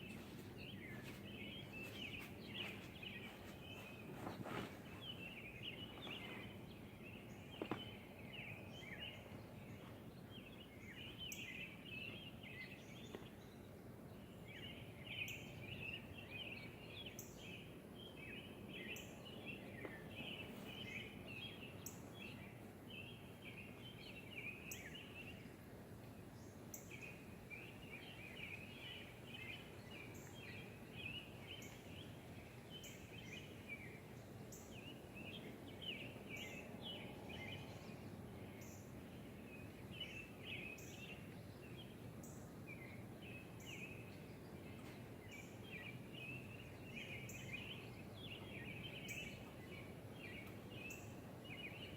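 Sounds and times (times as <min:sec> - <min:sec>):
birds chirping: 0:00.0 - 0:13.5
low background noise: 0:00.0 - 0:51.9.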